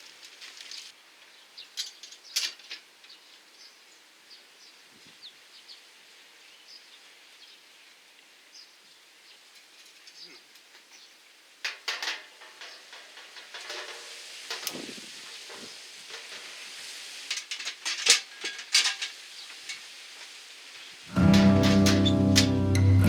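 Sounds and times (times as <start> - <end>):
food sizzling on a grill: 8.5 - 22.7
guitar music: 21.1 - 23.0.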